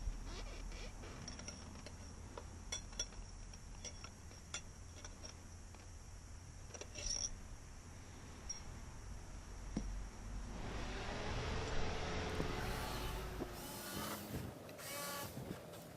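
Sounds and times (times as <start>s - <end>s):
low steady hum: 0.0s - 15.5s
small clicks and clinks: 1.0s - 5.9s, 6.6s - 7.4s.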